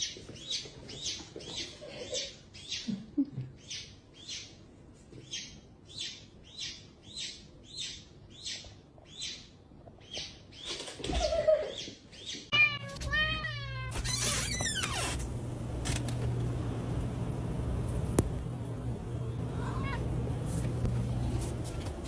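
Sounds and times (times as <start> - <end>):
cat meowing: 12.5 - 14.0, 19.5 - 20.1.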